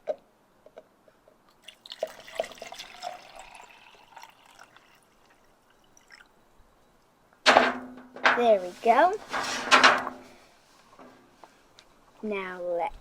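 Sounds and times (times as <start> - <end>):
water drips: 1.5 - 6.4
water pouring into plastic cup: 1.6 - 6.3.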